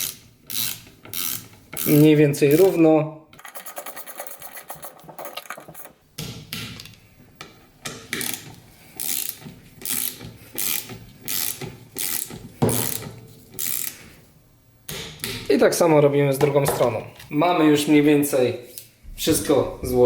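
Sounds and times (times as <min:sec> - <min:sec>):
torque wrench ratchet clicks: 0:00.0 - 0:02.0, 0:08.2 - 0:13.0, 0:13.6 - 0:13.9.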